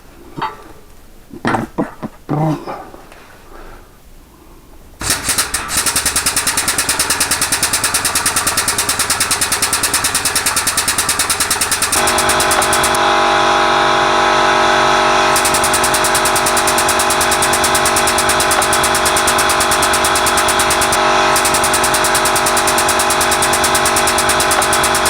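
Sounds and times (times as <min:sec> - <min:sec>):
air compressor chugging: 0:05.0 - 0:25.0.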